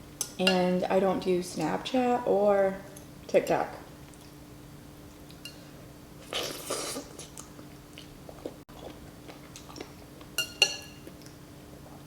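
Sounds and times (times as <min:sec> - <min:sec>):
person chewing: 0:06.2 - 0:11.4
spoon clinking against bowl: 0:10.4 - 0:11.0.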